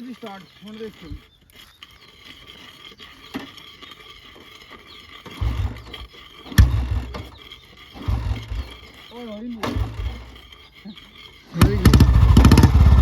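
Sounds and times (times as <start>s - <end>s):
motorcycle kick-start chug: 11.6s - 13.0s.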